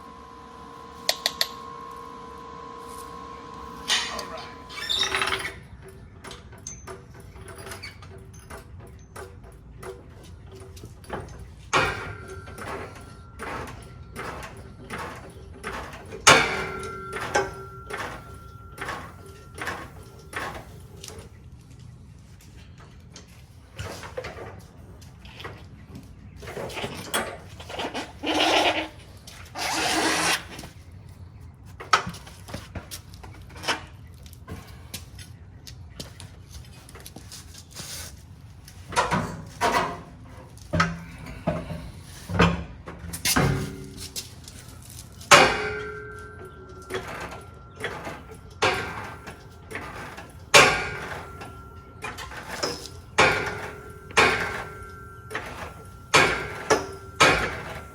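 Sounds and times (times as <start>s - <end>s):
power tool bursts: 0.0s - 5.4s
metal parts clanking: 3.8s - 21.4s, 38.7s - 57.9s.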